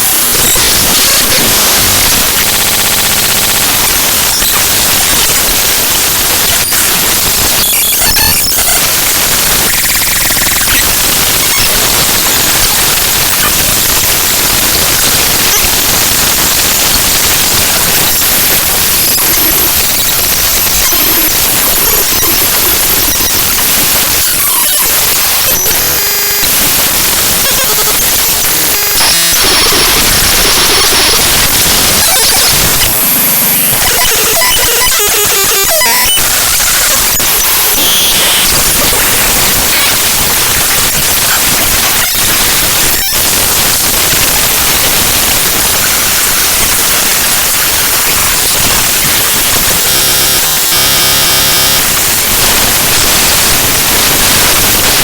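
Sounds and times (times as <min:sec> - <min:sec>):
harsh static noise: 0:00.0 - 0:55.0
short buzzy tones: 0:17.9 - 0:42.2, 0:49.7 - 0:52.0.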